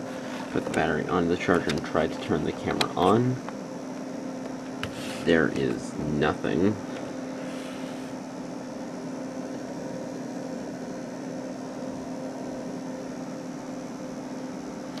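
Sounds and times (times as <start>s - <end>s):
electrical fan hum: 0.0s - 15.0s
even hiss: 4.8s - 8.2s.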